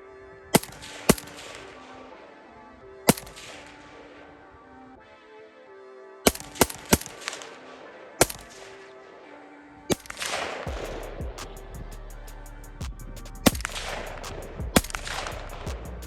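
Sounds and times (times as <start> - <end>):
rifle shots: 0.5 - 2.2, 3.0 - 4.3, 6.3 - 8.9, 9.9 - 11.6, 13.4 - 15.8
background music with fast beat: 10.7 - 16.0.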